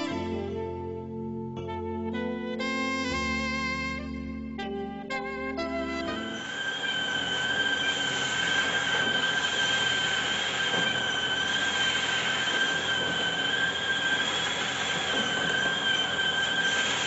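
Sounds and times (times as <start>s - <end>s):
machinery high-pitched squeal: 5.9s - 17.0s
mechanical hiss: 6.1s - 17.0s.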